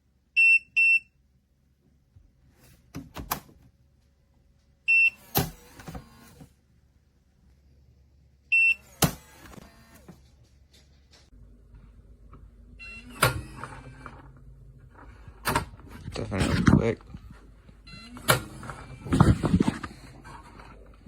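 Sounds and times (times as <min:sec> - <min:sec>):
electronic lock beep: 0:04.9 - 0:05.4, 0:08.5 - 0:09.0.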